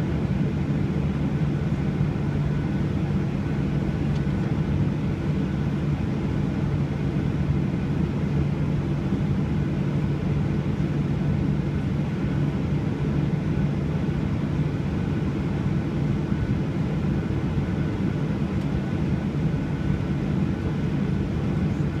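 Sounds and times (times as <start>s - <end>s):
faint steady whine: 0.0s - 22.0s
jet engine cabin rumble: 0.0s - 22.0s.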